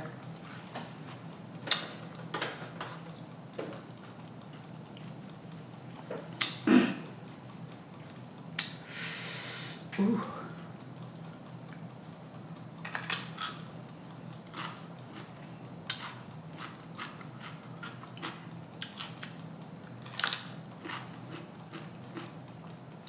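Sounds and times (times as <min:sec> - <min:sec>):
faint steady hum: 0:00.0 - 0:23.0
person chewing crunchy food: 0:10.8 - 0:11.9, 0:12.8 - 0:22.4.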